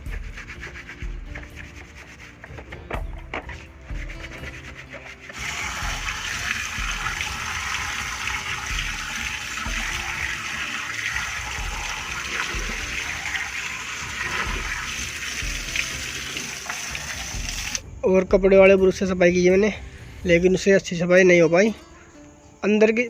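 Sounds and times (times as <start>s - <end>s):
brush scrubbing: 0.0s - 17.8s
water running from a tap: 5.3s - 17.8s.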